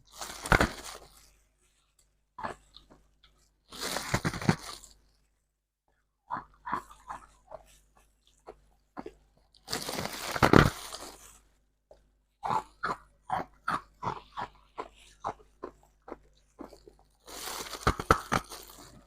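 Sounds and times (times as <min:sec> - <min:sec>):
chewing crunchy ice: 0:02.4 - 0:05.2, 0:06.3 - 0:11.5, 0:12.4 - 0:19.0.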